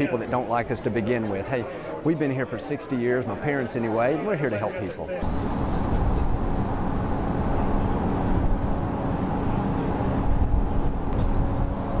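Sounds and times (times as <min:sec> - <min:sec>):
constant low hum: 0:05.2 - 0:12.0
engine-like rumble: 0:05.2 - 0:12.0.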